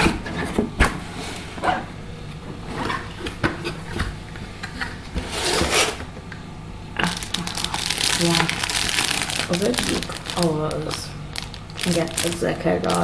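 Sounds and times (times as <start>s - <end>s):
cardboard rubbing and sliding: 5.1s - 6.0s.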